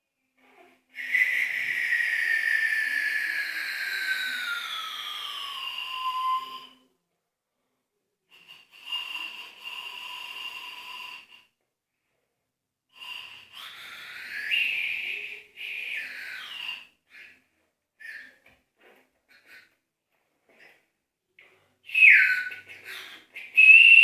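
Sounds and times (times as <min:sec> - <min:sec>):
shrill whistle: 0:01.0 - 0:06.9, 0:08.4 - 0:11.5, 0:13.0 - 0:17.4, 0:18.0 - 0:18.5, 0:21.9 - 0:24.0.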